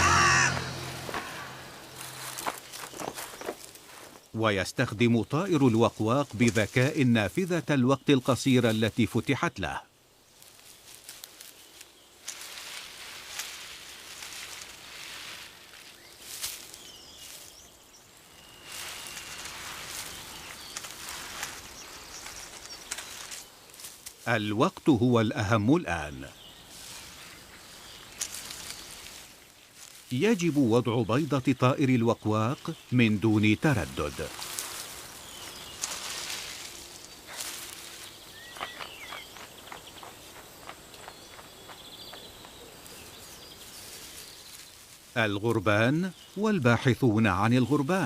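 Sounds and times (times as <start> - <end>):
chattering bird calls: 0.0 - 3.5, 30.2 - 48.0
faint outdoor ambience: 0.0 - 48.0
rustling hiss: 0.0 - 48.0
faint high bird chirps: 37.9 - 44.8.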